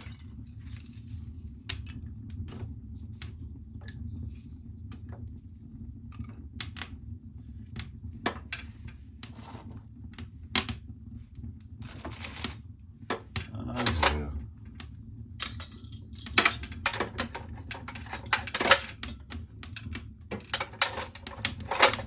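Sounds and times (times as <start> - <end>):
low hum: 0.0 - 22.0
fire crackling and popping: 0.1 - 15.4, 18.9 - 20.3.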